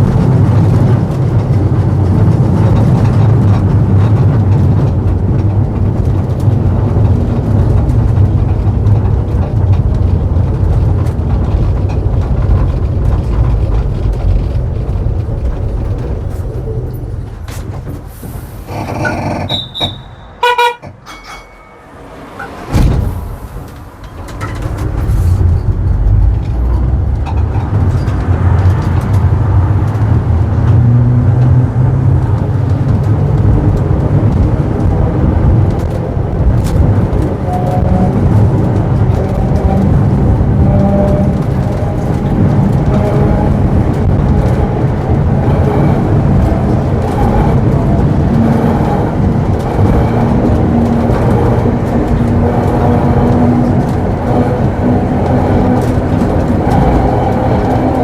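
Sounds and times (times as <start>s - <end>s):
tram rumbling: 0.0s - 58.0s
tram warning signals: 18.7s - 24.1s, 36.0s - 58.0s
sharp clunk: 22.4s - 24.9s.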